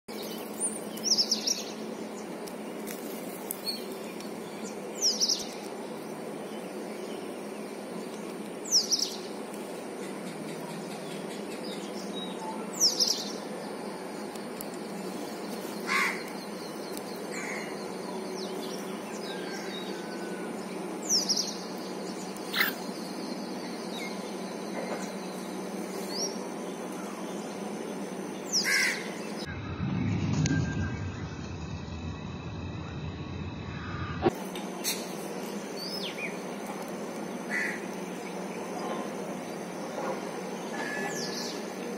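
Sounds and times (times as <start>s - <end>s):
steady background noise: 0.1s - 41.9s
babbler harsh calls: 22.5s - 22.8s.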